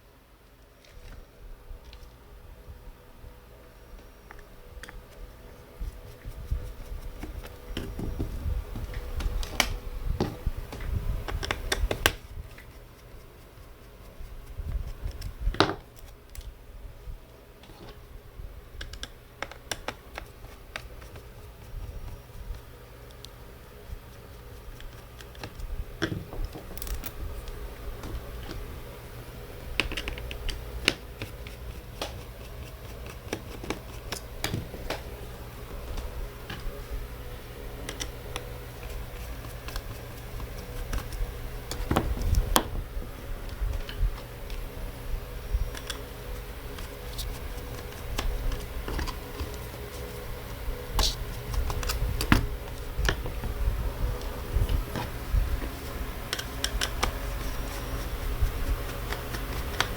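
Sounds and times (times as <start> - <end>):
low handling rumble: 34.3 - 59.5.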